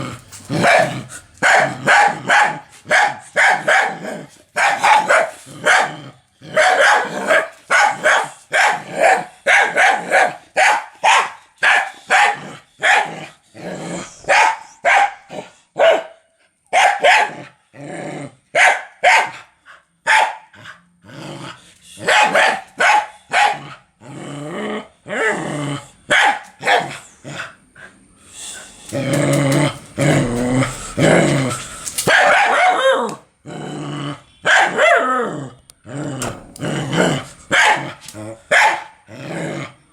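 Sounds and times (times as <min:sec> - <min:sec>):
dog barking: 0:00.6 - 0:04.0, 0:04.6 - 0:13.2, 0:14.2 - 0:17.5, 0:18.6 - 0:20.5, 0:22.0 - 0:23.7, 0:26.1 - 0:27.0, 0:32.1 - 0:33.1, 0:34.4 - 0:35.1, 0:36.2 - 0:39.0
dog growling: 0:13.5 - 0:14.5, 0:28.6 - 0:32.0, 0:35.0 - 0:39.8.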